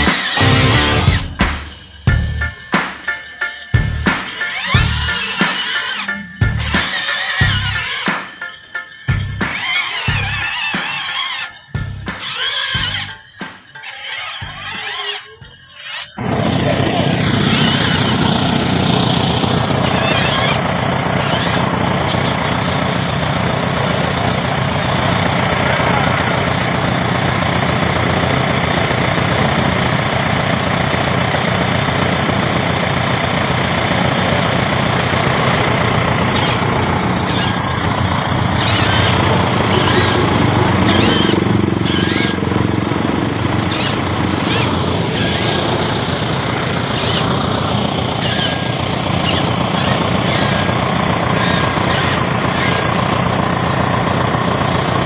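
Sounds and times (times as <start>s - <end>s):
model excavator machinery running: 0.0s - 2.5s, 14.0s - 55.0s.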